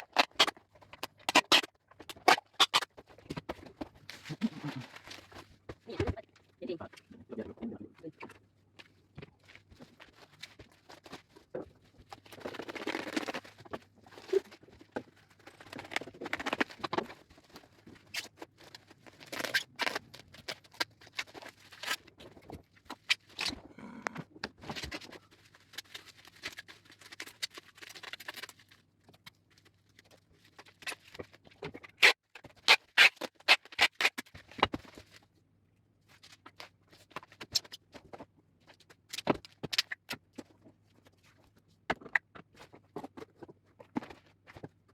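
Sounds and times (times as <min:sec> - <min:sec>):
packing tape pulled off roll: 0:00.0 - 0:02.9, 0:12.3 - 0:13.5, 0:19.1 - 0:22.0, 0:32.0 - 0:34.3.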